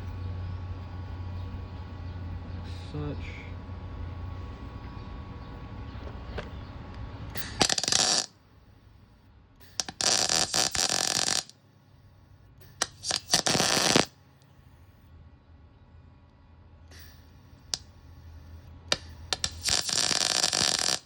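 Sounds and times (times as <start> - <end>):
welding arc bursts: 7.4 - 8.4, 9.6 - 11.6, 12.8 - 14.2, 18.9 - 21.0.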